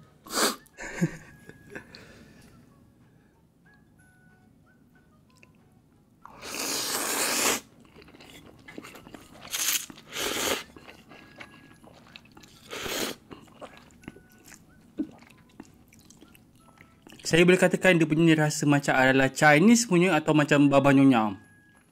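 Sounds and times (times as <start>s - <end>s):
person eating noodles: 6.3s - 17.2s
quiet chewing: 7.7s - 17.3s.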